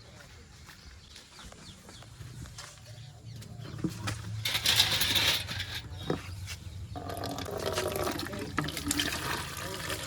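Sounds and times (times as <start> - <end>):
rattling: 4.3 - 6.2.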